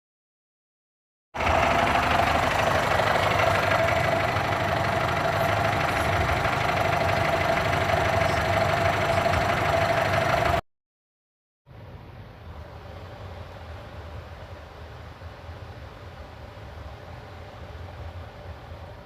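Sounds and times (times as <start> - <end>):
engine running with whine: 1.4 - 10.6.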